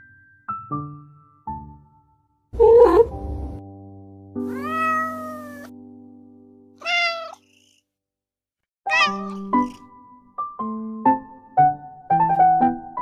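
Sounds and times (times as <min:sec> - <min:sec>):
cat meowing: 0:04.4 - 0:05.7, 0:06.8 - 0:07.8, 0:08.9 - 0:09.9.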